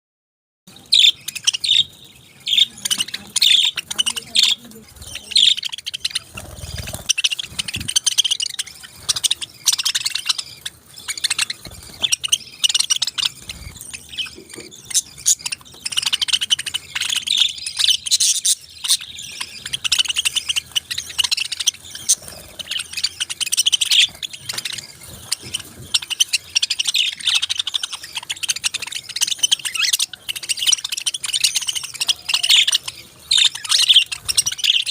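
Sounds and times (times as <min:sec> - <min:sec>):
parakeets chirping: 0:00.7 - 0:34.9.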